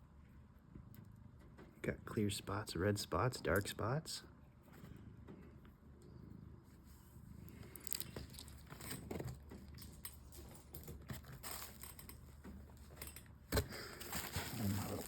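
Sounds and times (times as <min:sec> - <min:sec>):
small irregular clicks and knocks: 0:00.6 - 0:01.8, 0:04.7 - 0:06.4
packaging rustling and crinkling: 0:07.7 - 0:09.4, 0:10.9 - 0:12.1, 0:13.6 - 0:15.0.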